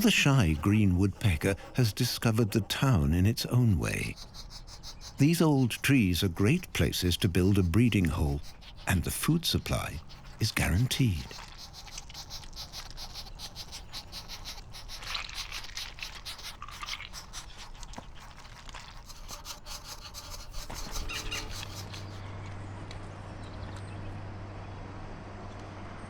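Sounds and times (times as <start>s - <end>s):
steady low hum: 0.0s - 19.1s
woodpecker pecking at wood: 0.0s - 22.3s.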